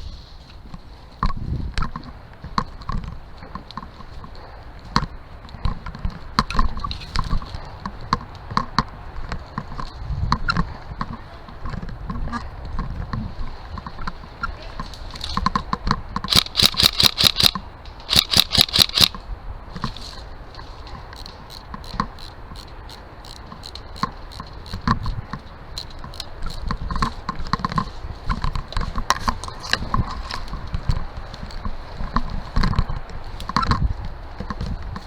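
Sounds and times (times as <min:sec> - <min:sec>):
clicks: 0:16.2 - 0:19.2
airsoft gun shots: 0:16.3 - 0:19.2.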